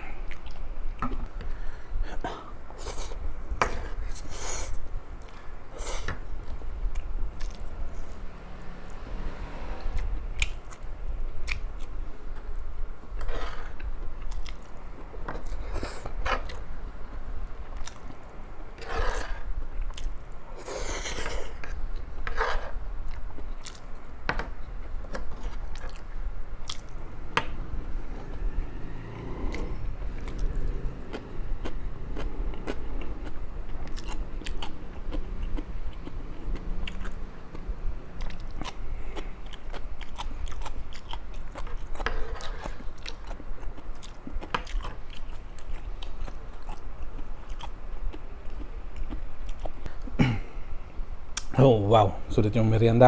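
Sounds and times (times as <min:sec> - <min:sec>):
person chewing crunchy food: 0:09.9 - 0:50.3.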